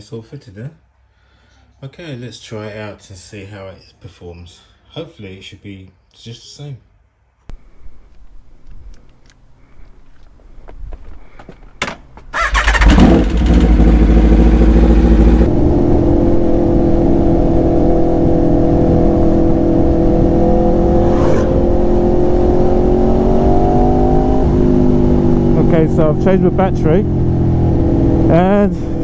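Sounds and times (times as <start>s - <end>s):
starter cranking: 11.8s - 13.9s
motorcycle engine revving and idling: 12.2s - 29.0s.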